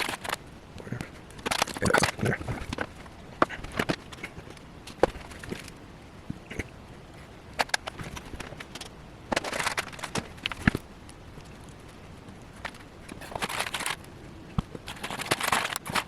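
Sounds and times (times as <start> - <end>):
small parts and tools clicking: 0.0 - 0.4, 12.6 - 16.0
faint steady hiss: 0.0 - 16.0.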